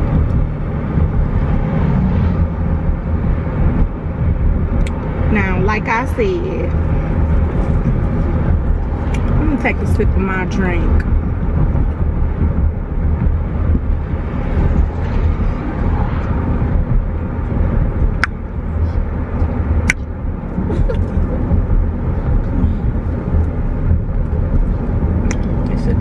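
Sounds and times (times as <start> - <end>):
car cabin road and engine rumble: 0.0 - 26.0.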